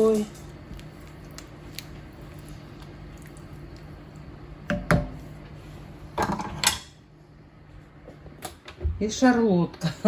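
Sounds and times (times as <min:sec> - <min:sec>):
steady low hum: 0:00.0 - 0:10.0
kitchenware clatter: 0:06.2 - 0:07.0.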